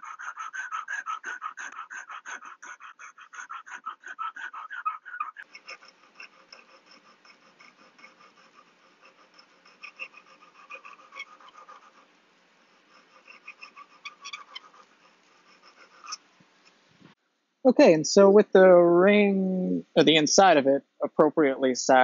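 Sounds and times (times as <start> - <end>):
hand file rasping wood: 0.0 - 16.2.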